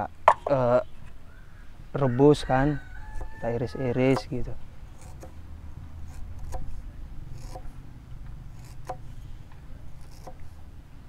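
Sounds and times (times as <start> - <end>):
knife slicing ginger: 5.0 - 5.4, 6.1 - 7.7, 8.5 - 9.1, 9.9 - 10.5.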